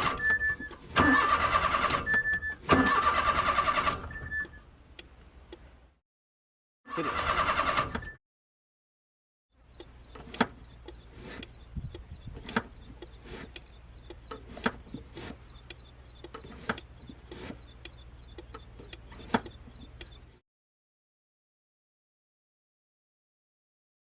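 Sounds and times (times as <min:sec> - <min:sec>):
car pedals clicking and knocking: 0:09.7 - 0:20.3.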